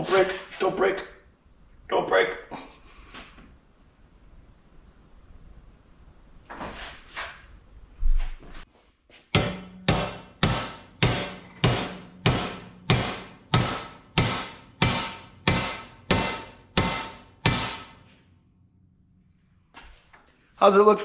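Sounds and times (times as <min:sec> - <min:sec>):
hammer striking steel: 0:09.3 - 0:18.0.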